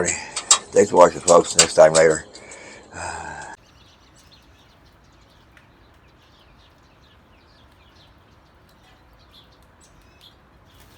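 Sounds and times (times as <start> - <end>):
bird chirps: 3.6 - 10.9.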